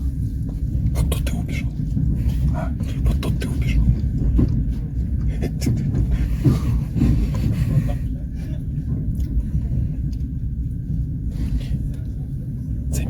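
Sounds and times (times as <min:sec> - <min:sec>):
train wheels rumbling on rails: 0:00.0 - 0:13.0.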